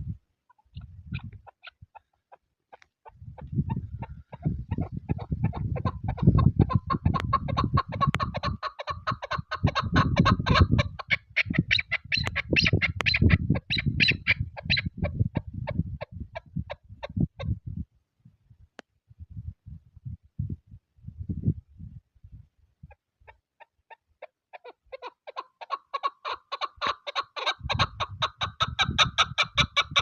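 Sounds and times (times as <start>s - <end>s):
wind rumble on microphone: 0.0s - 2.0s, 3.0s - 23.3s, 26.8s - 30.0s
partridge clucking calls: 0.5s - 17.5s, 23.3s - 30.0s.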